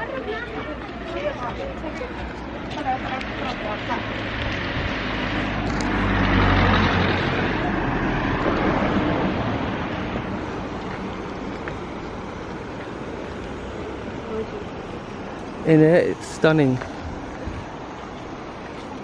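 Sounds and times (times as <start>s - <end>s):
vehicle passing by: 0.0s - 19.0s.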